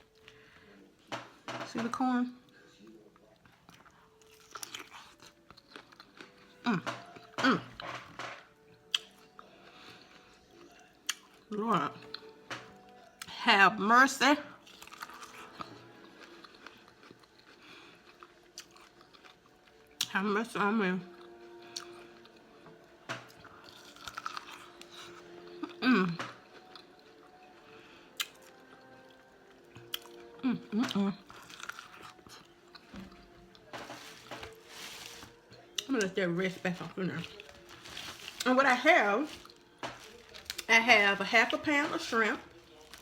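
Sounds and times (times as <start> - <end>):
wet chewing and smacking: 2.5 - 7.4, 8.6 - 13.4, 14.6 - 20.2, 21.1 - 34.6, 39.3 - 40.7
person chewing with wet smacks: 14.6 - 20.1, 28.2 - 29.1, 29.8 - 33.7.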